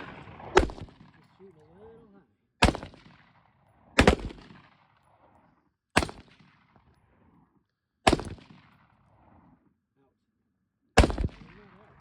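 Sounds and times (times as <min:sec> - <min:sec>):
gunshots with echo: 0:00.0 - 0:01.2, 0:02.6 - 0:03.4, 0:04.0 - 0:04.8, 0:06.0 - 0:06.6, 0:08.0 - 0:08.8, 0:11.0 - 0:12.0.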